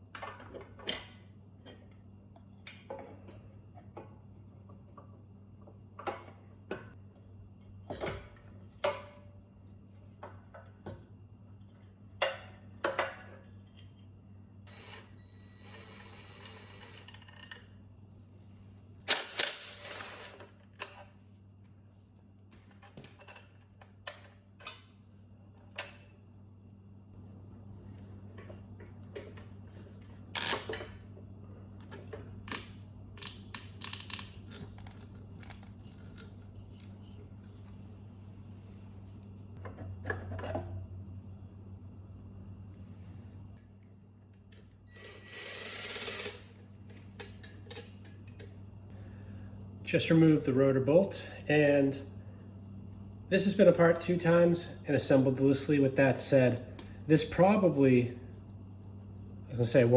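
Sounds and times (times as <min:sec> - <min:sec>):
steady low hum: 0:01.2 - 0:59.9
tools and metal parts clanking: 0:46.9 - 0:48.6.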